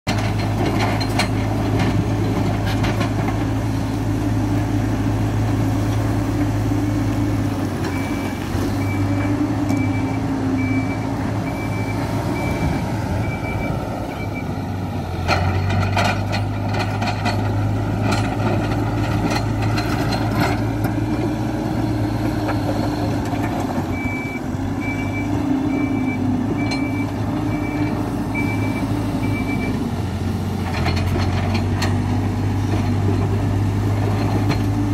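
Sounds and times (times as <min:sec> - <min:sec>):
diesel engine running: 0:00.1 - 0:34.9
reversing alarm beeping: 0:07.9 - 0:14.5, 0:23.9 - 0:29.8.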